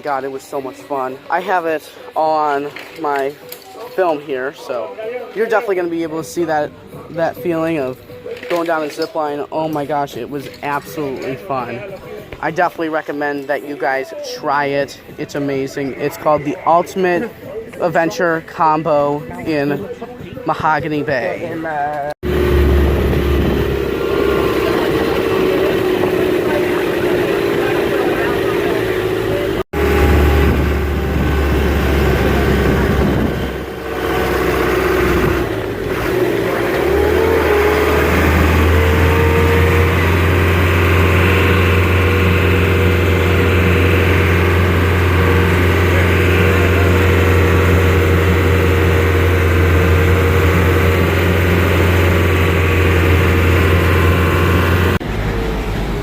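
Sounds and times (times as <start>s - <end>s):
zip line trolley humming on cable: 22.3s - 55.8s.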